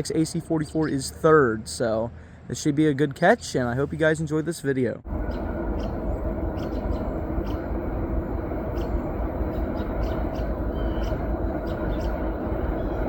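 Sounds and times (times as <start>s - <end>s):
freight train rumbling past: 5.1s - 13.0s.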